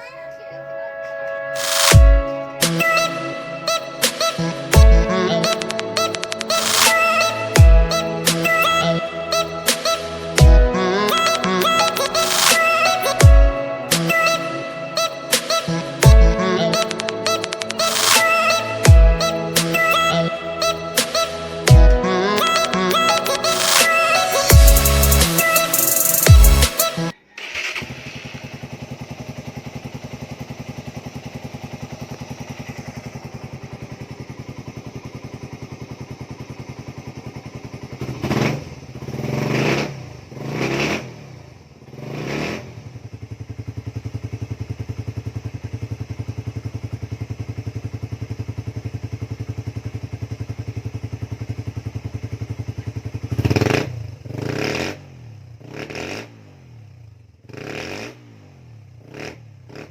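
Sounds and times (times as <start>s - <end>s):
motorcycle engine revving: 24.5s - 59.9s
motorcycle engine idling: 27.3s - 59.9s.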